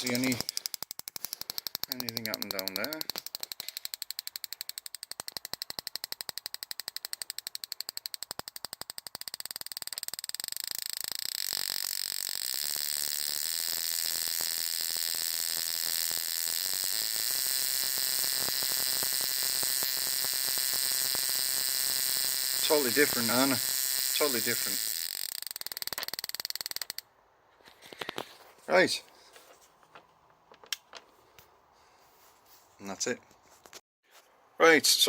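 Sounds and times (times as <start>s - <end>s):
spark ticking into a buzz: 0.0s - 27.0s.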